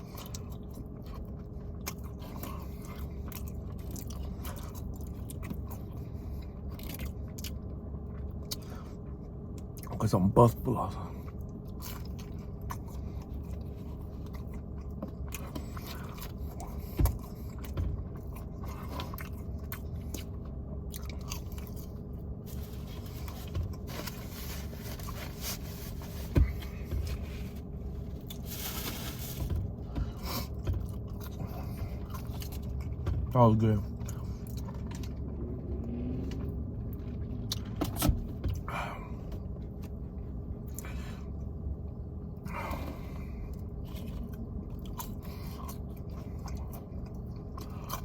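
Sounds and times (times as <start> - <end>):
person chewing food: 0.0 - 10.0, 11.1 - 33.3, 33.9 - 48.0
crunchy rustle: 21.4 - 29.8.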